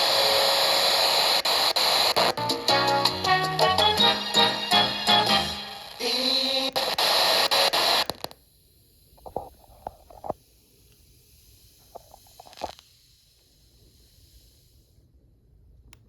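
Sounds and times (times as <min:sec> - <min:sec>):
radio static hiss with crackles: 0:00.0 - 0:03.2, 0:05.6 - 0:08.5, 0:09.1 - 0:10.4.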